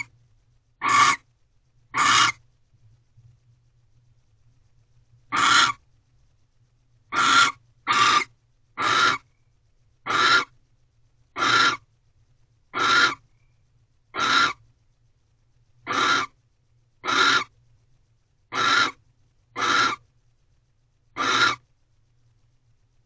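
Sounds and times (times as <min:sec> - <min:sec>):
barn owl hissing calls: 0:00.8 - 0:01.2, 0:01.9 - 0:02.4, 0:05.3 - 0:05.8, 0:07.1 - 0:09.4, 0:10.0 - 0:10.5, 0:11.4 - 0:11.9, 0:12.7 - 0:13.3, 0:14.1 - 0:14.6, 0:15.8 - 0:16.4, 0:17.0 - 0:17.5, 0:18.5 - 0:19.0, 0:19.6 - 0:20.0, 0:21.2 - 0:21.6.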